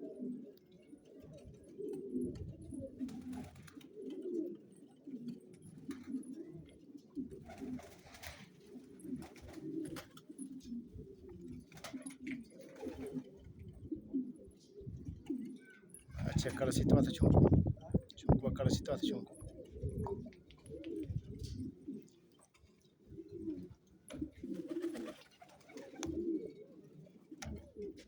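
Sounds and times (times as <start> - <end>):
pigeons cooing: 0.0 - 28.0.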